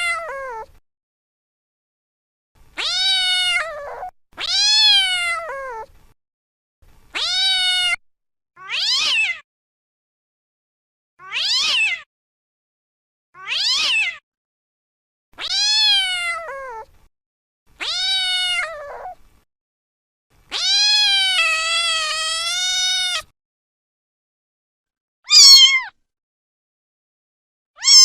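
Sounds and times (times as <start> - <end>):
cat meowing: 0.0 - 0.8, 2.8 - 5.9, 7.1 - 8.0, 8.6 - 9.4, 11.2 - 12.1, 13.4 - 14.2, 15.4 - 16.9, 17.8 - 19.2, 20.5 - 23.3, 25.3 - 26.0, 27.8 - 28.0.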